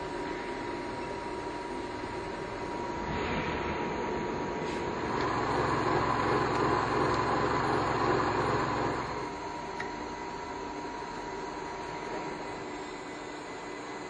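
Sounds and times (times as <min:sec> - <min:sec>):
milling machine whining: 0:04.9 - 0:09.6.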